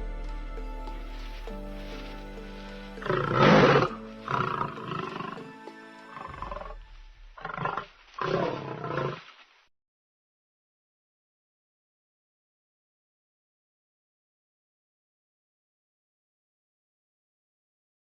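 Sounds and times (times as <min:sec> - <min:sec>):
background music: 0:00.0 - 0:08.9
lion snoring: 0:02.9 - 0:09.2.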